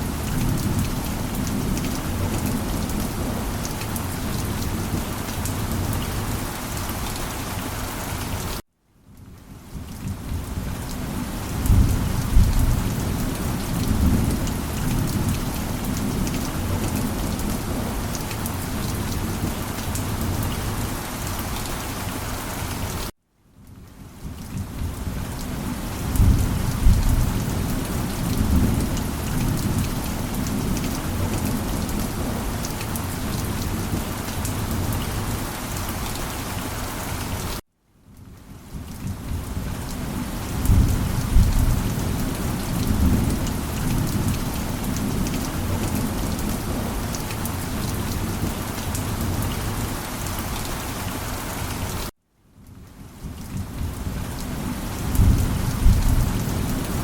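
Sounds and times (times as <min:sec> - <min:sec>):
heavy rain falling: 0:00.0 - 0:08.6, 0:09.2 - 0:23.1, 0:24.0 - 0:37.6, 0:38.4 - 0:52.1, 0:52.8 - 0:57.0
rolling thunder: 0:11.6 - 0:18.0, 0:26.1 - 0:32.5, 0:40.6 - 0:46.9, 0:55.0 - 0:57.0.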